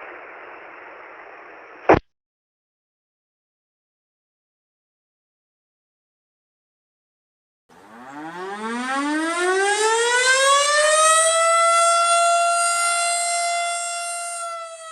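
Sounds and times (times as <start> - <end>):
fire siren wailing: 7.7 - 14.9.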